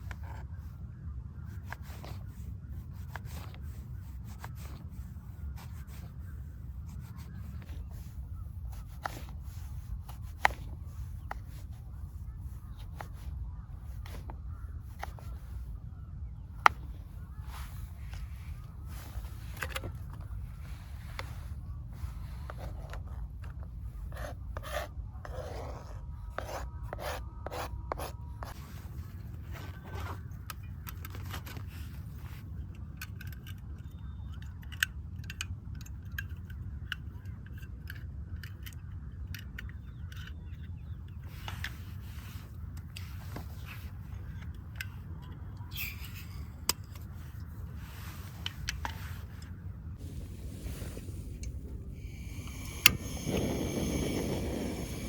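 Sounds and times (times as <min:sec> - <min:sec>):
handling scraping and rubbing: 0:01.4 - 0:33.5, 0:37.3 - 0:55.0
steady low rumble: 0:46.3 - 0:55.0.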